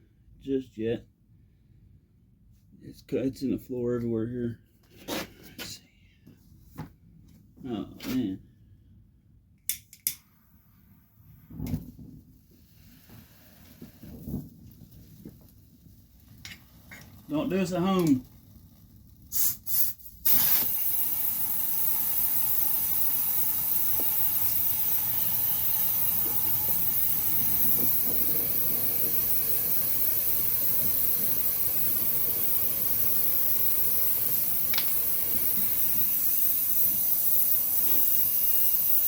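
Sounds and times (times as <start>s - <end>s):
gas hissing from tire: 10.2s - 39.0s.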